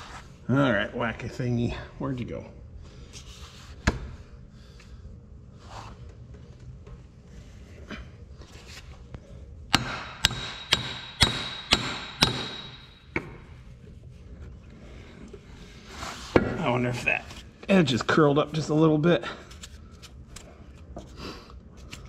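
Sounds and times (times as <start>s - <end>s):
hammer striking metal: 9.7s - 13.4s.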